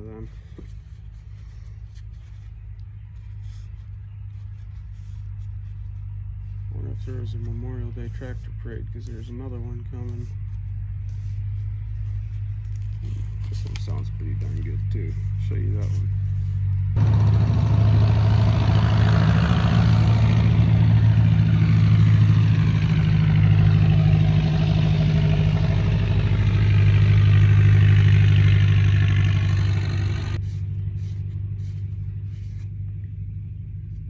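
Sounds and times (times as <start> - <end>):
tractor engine driving past: 16.1 - 34.0.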